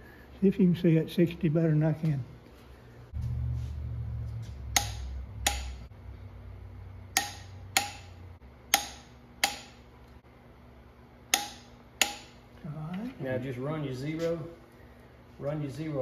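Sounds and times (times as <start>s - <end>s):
low hum: 2.7s - 12.6s.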